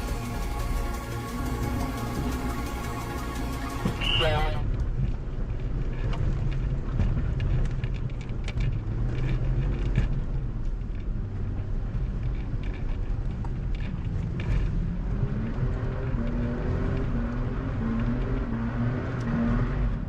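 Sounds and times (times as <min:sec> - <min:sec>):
car engine running: 0:00.0 - 0:04.7.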